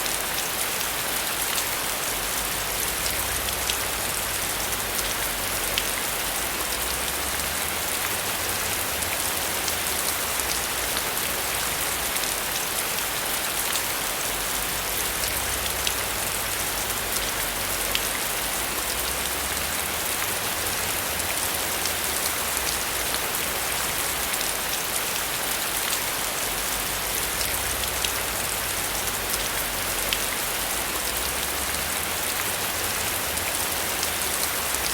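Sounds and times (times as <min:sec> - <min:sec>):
raindrops ticking: 0:14.6 - 0:24.4.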